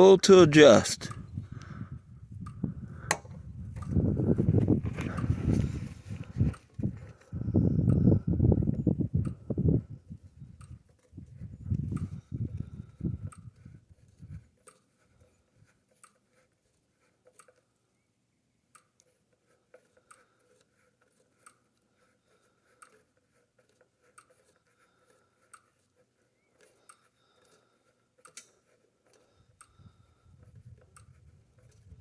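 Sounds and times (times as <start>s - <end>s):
faint irregular clicks: 10.6s - 17.8s, 18.7s - 32.0s.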